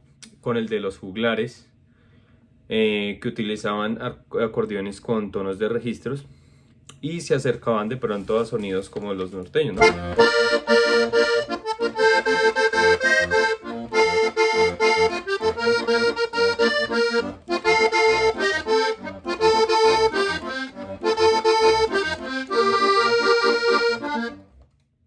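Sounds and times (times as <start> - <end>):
button accordion playing: 9.7 - 24.6.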